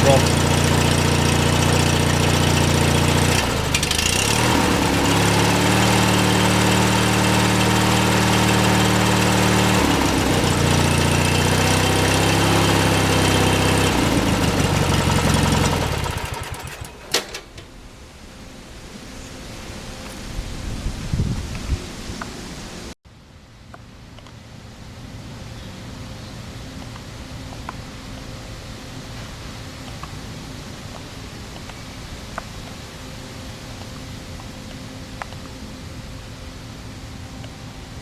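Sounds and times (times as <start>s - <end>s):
lawn tractor engine revving: 0.0s - 17.8s.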